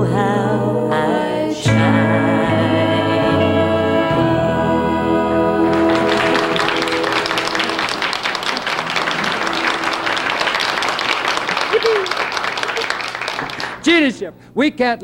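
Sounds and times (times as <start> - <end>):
country band chord ringing: 1.7 - 11.5
audience applause: 5.6 - 13.9.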